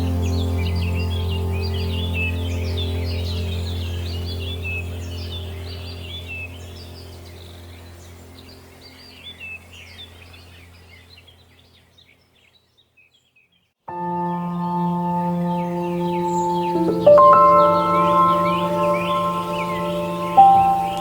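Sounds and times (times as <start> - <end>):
low steady drone: 0.0 - 8.5, 13.9 - 21.0
songbirds chirping and singing: 0.0 - 21.0.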